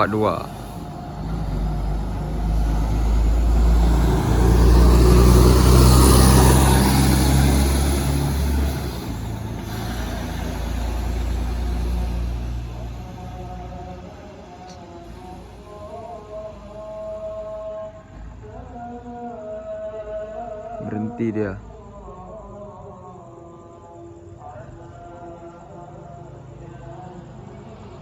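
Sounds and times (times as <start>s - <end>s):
tyre and road noise: 0.0s - 18.8s
bus diesel engine passing: 0.0s - 28.0s.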